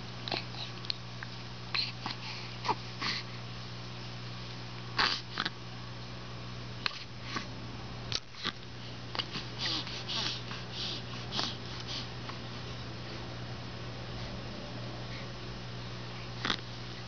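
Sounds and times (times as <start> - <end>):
steady low hum: 0.0 - 17.0
baby sniffing and breathing: 9.2 - 12.2.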